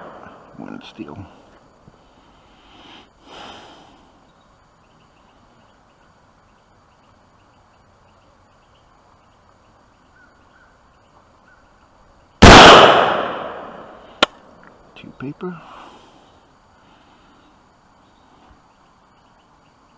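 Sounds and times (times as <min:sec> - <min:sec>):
faint chirping: 0:00.0 - 0:12.4, 0:13.9 - 0:19.9
rifle shot: 0:12.4 - 0:14.3.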